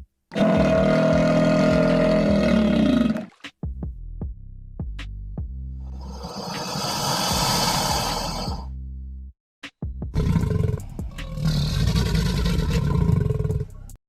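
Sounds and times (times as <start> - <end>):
animal roars: 0.3 - 3.4, 6.0 - 8.6, 10.2 - 13.7
electronic background music: 5.8 - 8.8.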